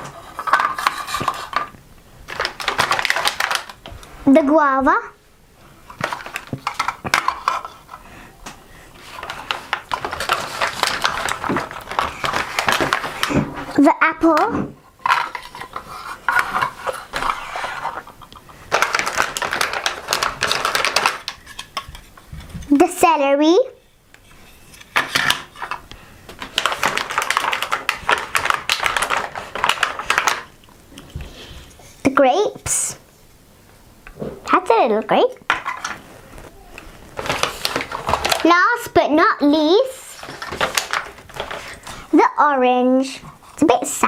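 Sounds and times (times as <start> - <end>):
plastic toy pieces clattering: 0.0 - 1.7, 2.3 - 3.9, 5.9 - 8.0, 9.0 - 13.4, 14.4 - 22.8, 24.6 - 25.8, 26.4 - 30.5, 37.2 - 38.9, 40.0 - 41.9
crackly rustle: 0.0 - 4.3, 5.6 - 13.8, 14.8 - 23.1, 24.1 - 32.1, 35.4 - 42.2.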